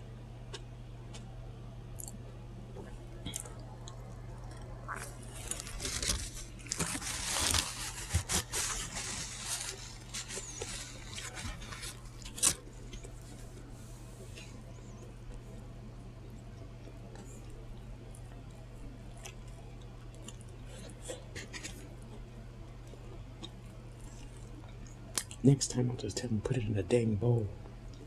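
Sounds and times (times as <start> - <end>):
steady low hum: 0.0 - 28.0
crunchy chewing: 2.8 - 15.5, 16.3 - 25.4.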